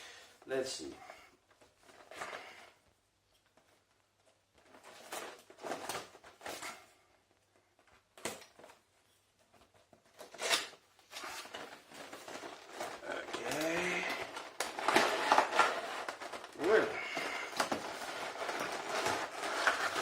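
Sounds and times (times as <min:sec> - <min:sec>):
cardboard packaging rustling: 0:03.6 - 0:07.0, 0:07.7 - 0:20.0.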